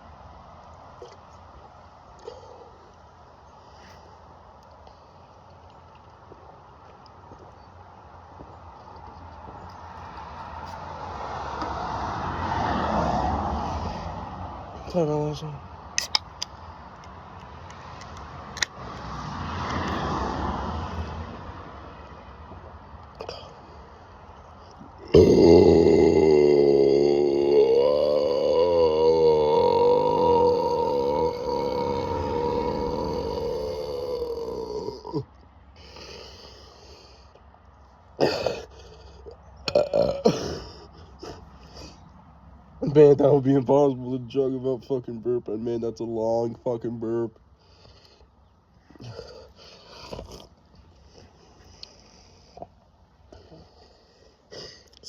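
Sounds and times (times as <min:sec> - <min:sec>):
vehicle passing by: 0:09.4 - 0:15.9, 0:16.6 - 0:35.2
coughs and throat-clearing: 0:23.2 - 0:23.6, 0:38.2 - 0:38.7, 0:39.7 - 0:41.5
man burping: 0:23.2 - 0:23.6, 0:25.0 - 0:35.4, 0:38.2 - 0:41.9, 0:49.0 - 0:50.6.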